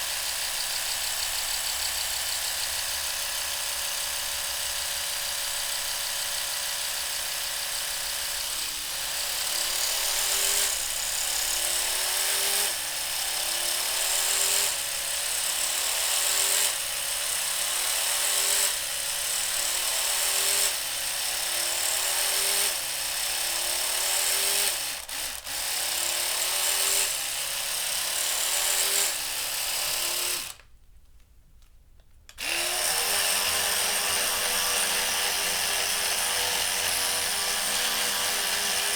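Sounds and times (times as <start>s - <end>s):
electric toothbrush buzzing: 0.0s - 20.8s, 32.4s - 38.9s.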